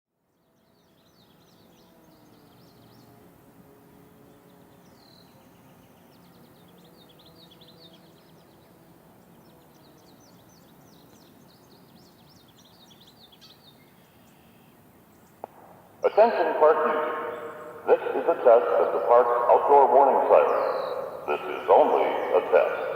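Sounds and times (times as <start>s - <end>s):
birds chirping: 0.4s - 3.4s, 4.1s - 22.9s
distant warning sirens wailing: 15.4s - 22.9s.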